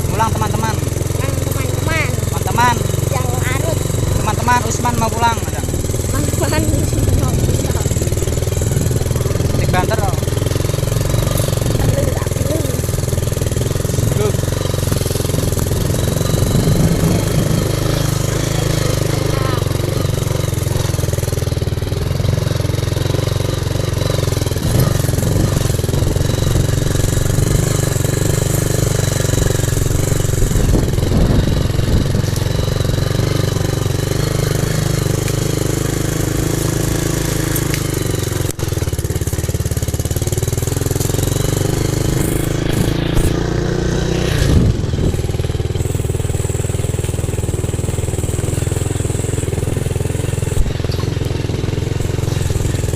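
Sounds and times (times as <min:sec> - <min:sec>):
motorcycle engine running: 0:00.0 - 0:52.9
wind noise: 0:15.1 - 0:18.3, 0:24.6 - 0:27.8, 0:29.3 - 0:33.0, 0:42.1 - 0:45.6.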